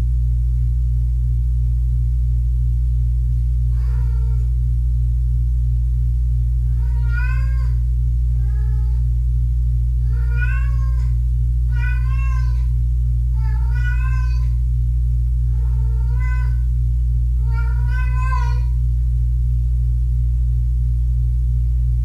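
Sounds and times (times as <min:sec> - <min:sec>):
loud steady low hum: 0:00.0 - 0:22.0
kitten meowing: 0:03.8 - 0:04.5, 0:06.7 - 0:07.8, 0:08.4 - 0:09.0, 0:10.1 - 0:12.7, 0:13.4 - 0:14.6, 0:15.6 - 0:16.6, 0:17.4 - 0:18.7.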